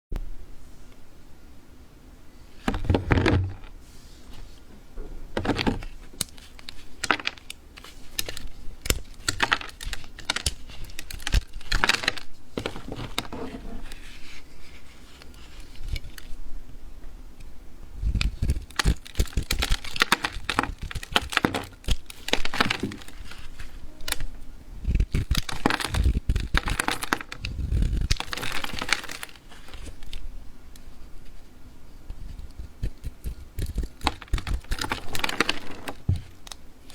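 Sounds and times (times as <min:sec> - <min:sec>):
knife cutting dried soap: 0:05.4 - 0:16.3, 0:18.1 - 0:30.2, 0:32.1 - 0:36.9.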